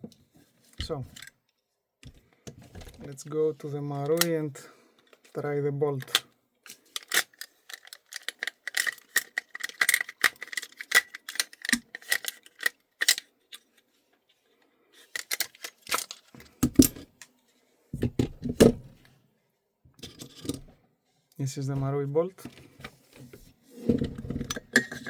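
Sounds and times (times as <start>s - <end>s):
metal parts clicking and rattling: 6.0s - 13.7s, 15.0s - 17.1s.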